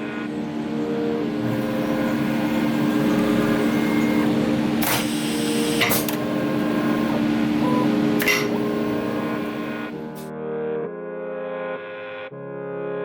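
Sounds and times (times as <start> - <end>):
cnc router motor whine: 0.0 - 10.3
pneumatic hiss bursts: 0.6 - 10.3.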